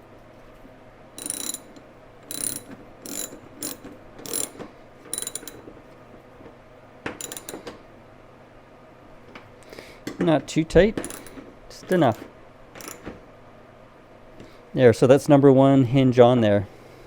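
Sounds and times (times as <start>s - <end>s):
ratchet wrench clicking: 1.2s - 5.6s, 7.2s - 7.6s, 11.0s - 12.2s, 12.8s - 13.1s.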